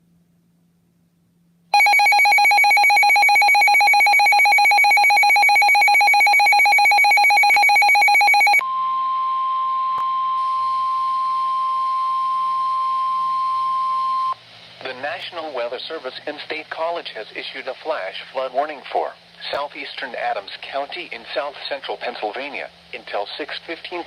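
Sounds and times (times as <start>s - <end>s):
steady alarm tone: 1.8s - 9.0s.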